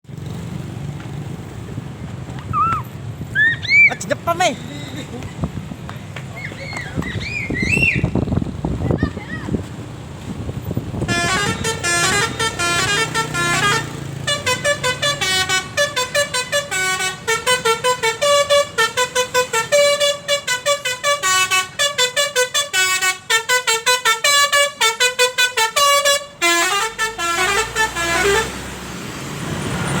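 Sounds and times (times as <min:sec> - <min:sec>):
multi-tone bus horn tune: 0:10.9 - 0:28.9.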